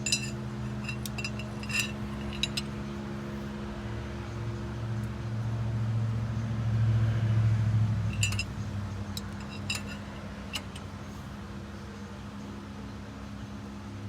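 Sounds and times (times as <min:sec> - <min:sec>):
steel tools clinking on metal: 0:00.0 - 0:02.8, 0:08.1 - 0:10.9.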